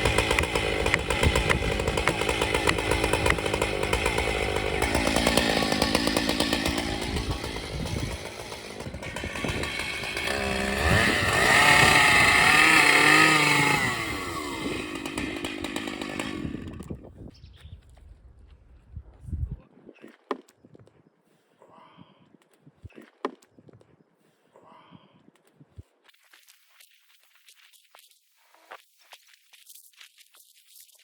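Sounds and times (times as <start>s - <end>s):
chainsaw running: 0.0s - 17.1s.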